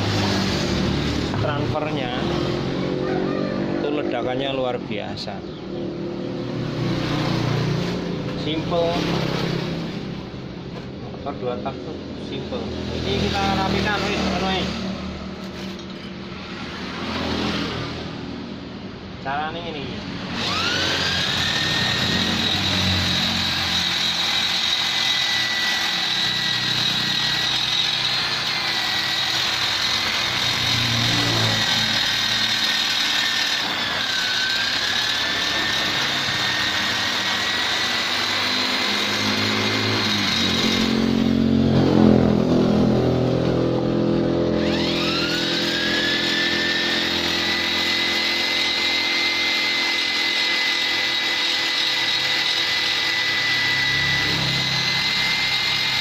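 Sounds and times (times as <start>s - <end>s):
die grinder whining: 0.0s - 3.0s, 12.5s - 17.7s, 20.1s - 42.1s, 44.4s - 56.0s.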